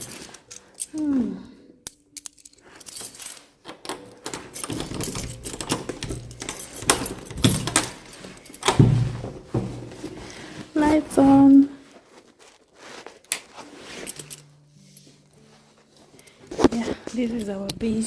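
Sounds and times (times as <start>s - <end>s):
handling clicks and clinks: 0.0s - 1.1s, 1.8s - 11.6s, 13.3s - 18.0s
footsteps: 4.0s - 18.0s.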